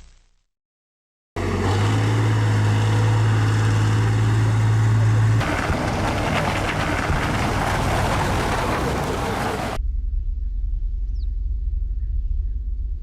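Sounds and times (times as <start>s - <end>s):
truck engine humming: 1.4s - 9.8s.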